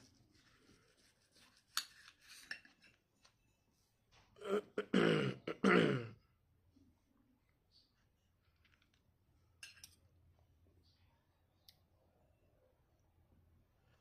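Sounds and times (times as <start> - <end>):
man coughing: 4.4 - 6.2.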